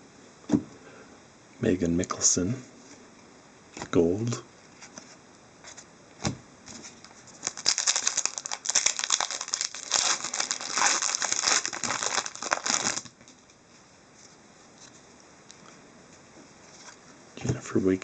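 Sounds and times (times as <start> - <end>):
foil wrapper crinkling: 7.0 - 13.3.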